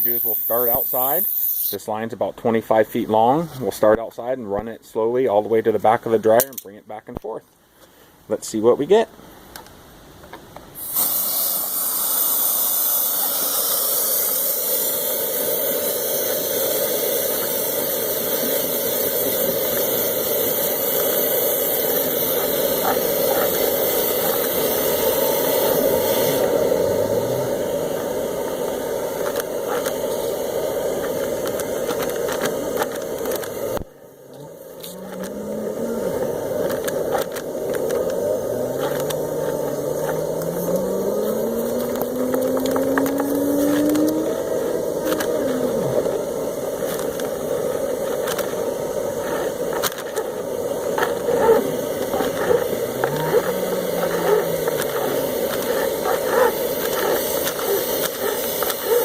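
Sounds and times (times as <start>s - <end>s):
rising whine: 17.2s - 59.0s.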